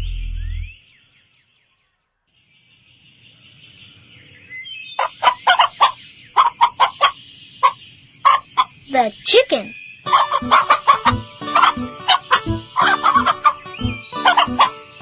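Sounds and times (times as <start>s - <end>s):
chicken clucking: 5.0s - 8.8s, 10.1s - 14.8s.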